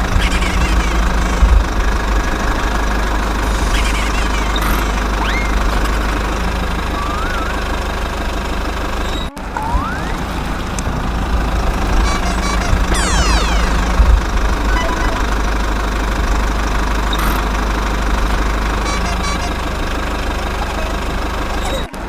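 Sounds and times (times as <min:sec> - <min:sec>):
diesel engine idling rumble: 0:00.0 - 0:22.0
gliding whistle-like chirps: 0:03.8 - 0:05.7, 0:06.8 - 0:07.9, 0:09.0 - 0:10.2, 0:12.9 - 0:14.0, 0:14.7 - 0:15.3.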